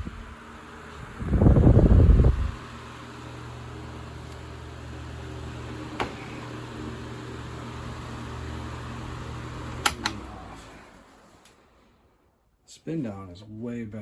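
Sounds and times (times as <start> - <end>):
table fan running: 0.0 - 12.0
fan switch clicks: 9.8 - 10.3.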